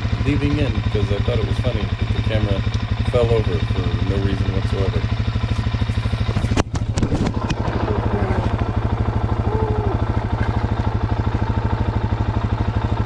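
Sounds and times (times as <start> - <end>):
motorcycle engine idling: 0.0 - 13.0
camera falling over: 6.3 - 7.6.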